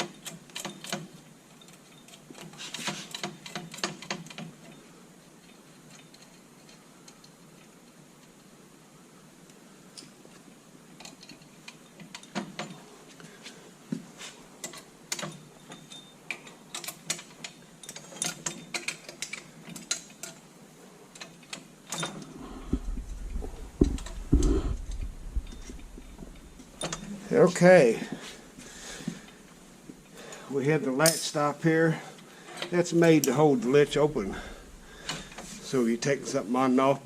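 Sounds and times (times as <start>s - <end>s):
low rumble: 22.3s - 27.2s
heavy metal knocks: 22.7s - 27.0s.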